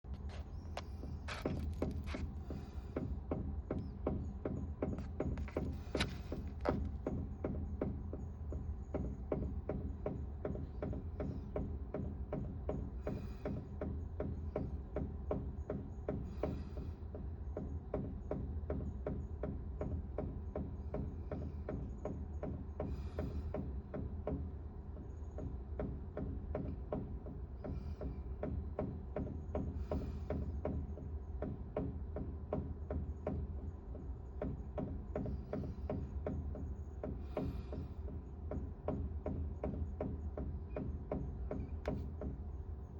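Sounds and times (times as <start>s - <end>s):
heater pipes knocking rhythmically: 0.0s - 42.9s.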